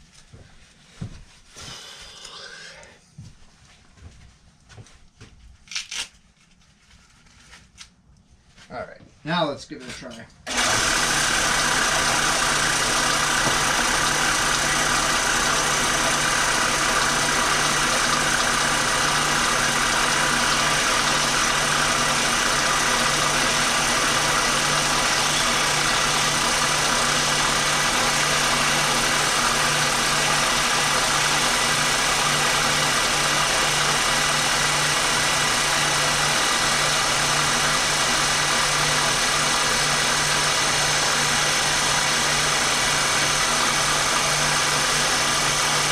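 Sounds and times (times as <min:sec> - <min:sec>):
bandsaw cutting plastic: 0:05.7 - 0:06.2, 0:10.5 - 0:45.9.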